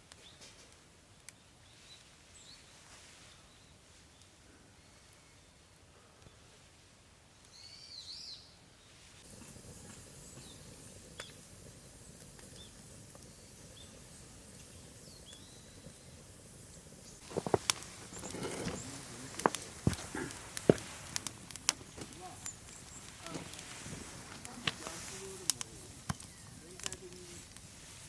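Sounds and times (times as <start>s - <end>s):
outdoor hiss: 0.0s - 28.0s
bird chirps: 12.5s - 17.2s.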